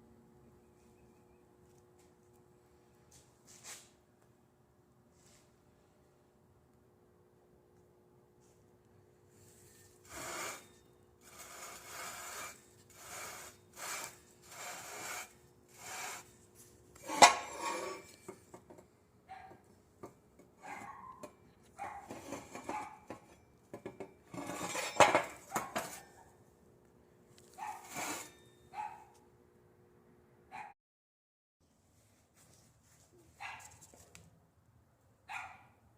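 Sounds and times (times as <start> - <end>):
metal rasping strokes: 9.4 - 18.6, 20.6 - 23.4, 24.3 - 26.2, 27.6 - 28.5.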